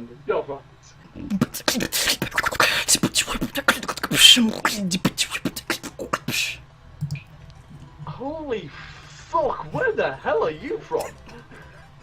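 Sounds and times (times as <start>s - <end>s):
person beatboxing: 1.2s - 6.6s.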